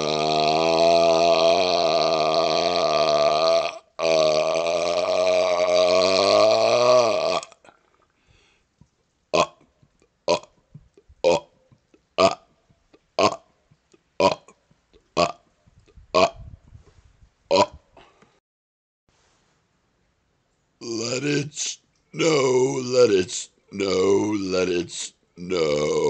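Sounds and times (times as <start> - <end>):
man burping: 0.0 - 7.8, 9.3 - 9.6, 10.3 - 11.6, 12.2 - 13.5, 14.2 - 14.6, 15.2 - 15.5, 16.1 - 16.4, 17.5 - 17.9, 20.8 - 26.0.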